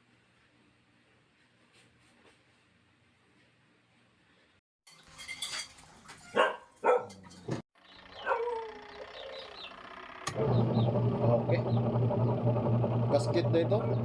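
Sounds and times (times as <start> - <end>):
dog barking: 6.3 - 7.3, 8.2 - 8.7.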